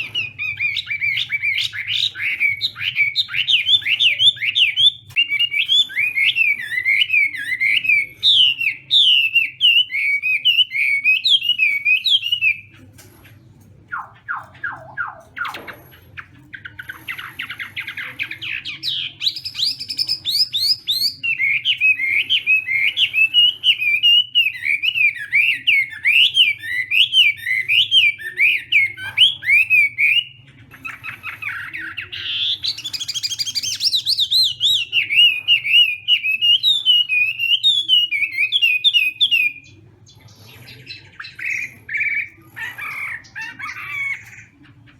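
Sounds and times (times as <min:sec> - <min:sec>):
bird singing whistled song: 0:00.0 - 0:12.7, 0:16.7 - 0:44.5.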